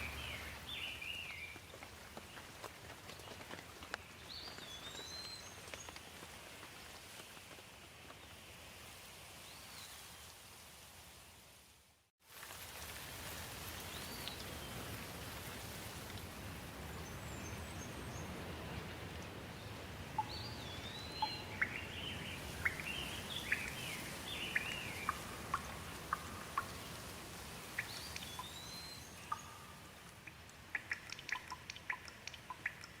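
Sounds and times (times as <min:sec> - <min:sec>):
bird chirping: 0:00.0 - 0:01.6, 0:20.2 - 0:26.9, 0:27.7 - 0:33.0
steady rain: 0:00.0 - 0:33.0
water drops ticking: 0:20.2 - 0:20.5, 0:24.5 - 0:26.9, 0:27.8 - 0:33.0.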